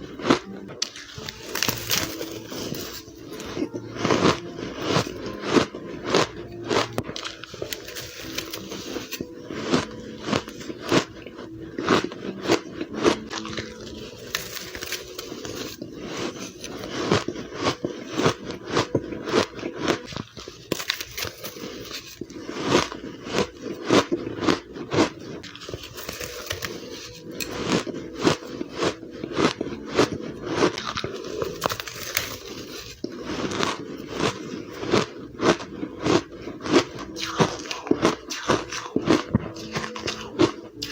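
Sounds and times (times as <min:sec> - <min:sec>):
ice crunching being chewed: 0:00.0 - 0:40.9.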